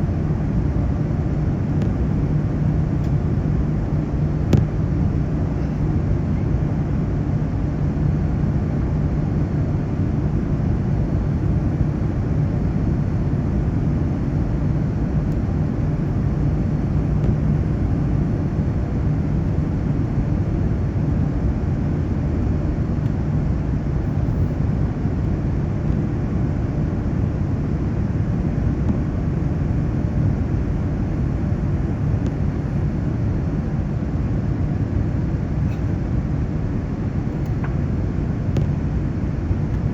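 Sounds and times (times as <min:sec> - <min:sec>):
airliner cabin engine rumble: 0:00.0 - 0:39.9.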